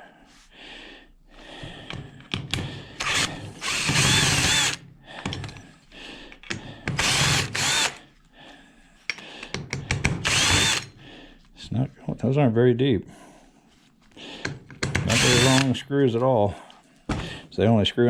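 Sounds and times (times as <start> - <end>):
handling clicks and knocks: 1.7 - 2.7, 5.2 - 5.7, 14.4 - 15.1
power drill whining: 2.5 - 5.4, 6.5 - 8.1, 9.9 - 11.0, 15.0 - 15.8.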